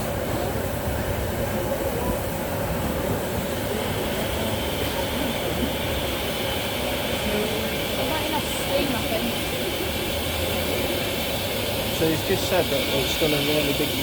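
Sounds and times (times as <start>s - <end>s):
train rumbling at platform: 0.0s - 14.0s
high hiss: 2.8s - 14.0s.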